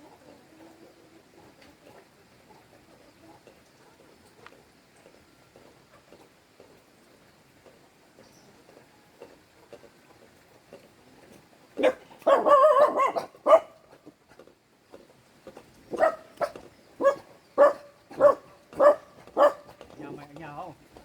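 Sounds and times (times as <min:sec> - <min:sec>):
dog barking: 0:11.8 - 0:13.8, 0:15.9 - 0:19.8.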